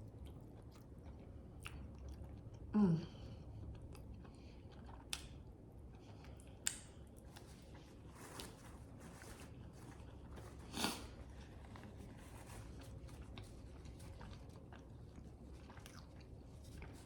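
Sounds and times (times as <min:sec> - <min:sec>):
person chewing food: 0:00.0 - 0:17.0.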